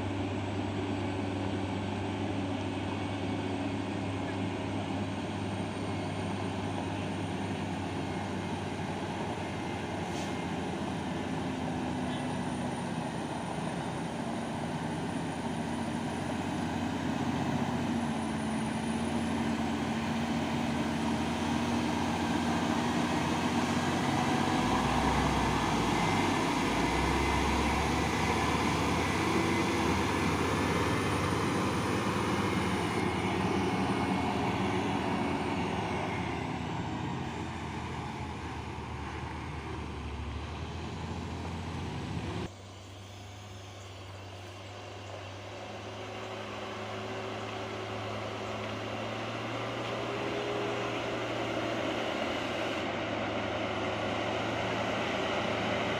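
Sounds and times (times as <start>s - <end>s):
diesel truck engine labouring: 0.0s - 55.9s.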